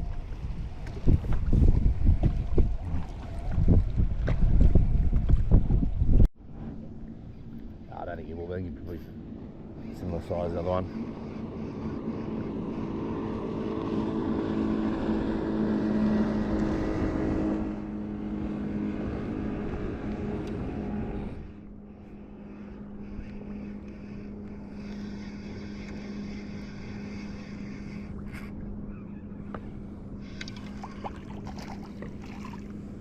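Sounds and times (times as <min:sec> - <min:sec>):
motorboat engine humming: 0:00.0 - 0:33.0.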